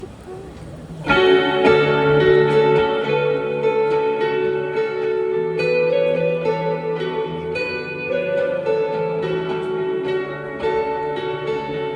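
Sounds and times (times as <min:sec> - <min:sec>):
live band with guitar chords: 0:00.0 - 0:11.9.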